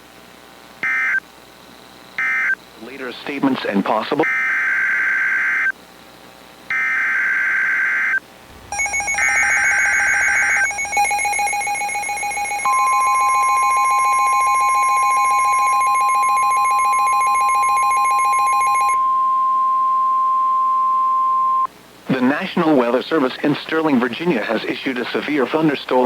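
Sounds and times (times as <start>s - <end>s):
steady single-pitch alarm tone: 6.7s - 21.7s
buzzing two-tone attention signal: 8.5s - 21.7s
digital data bursts: 8.6s - 19.0s.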